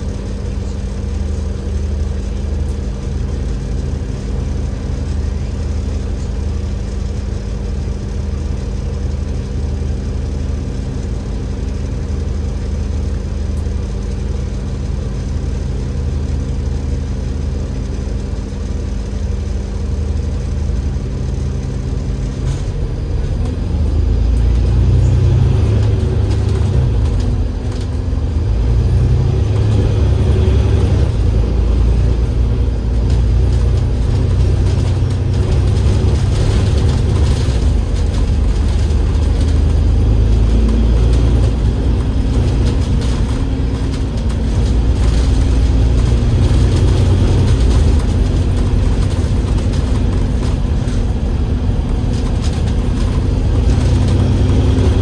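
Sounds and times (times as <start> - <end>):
bus diesel engine running: 0.0 - 55.0.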